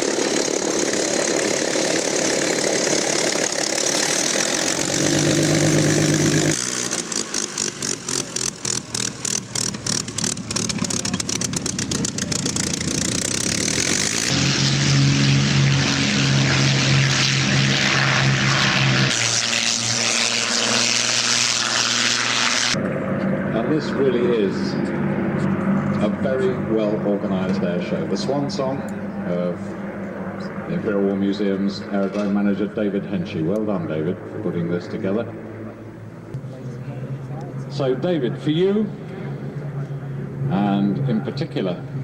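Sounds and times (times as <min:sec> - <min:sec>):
fast regular pulsing: 0:00.0 - 0:14.3
propeller aircraft engines running: 0:00.0 - 0:42.0.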